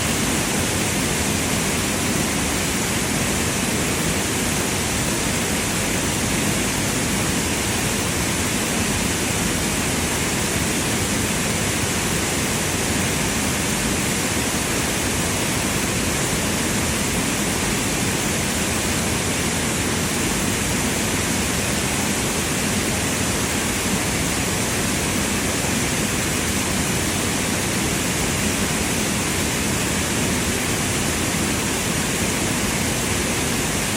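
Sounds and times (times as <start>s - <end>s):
rushing running water: 0.0s - 33.9s.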